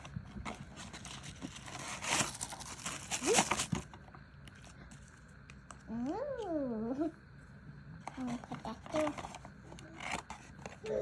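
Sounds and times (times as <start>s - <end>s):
packaging crinkling and rustling: 0.0s - 5.3s.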